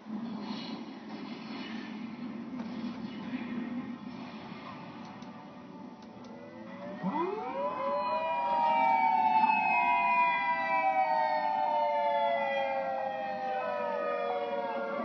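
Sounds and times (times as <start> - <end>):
tornado warning siren: 6.3 - 15.0.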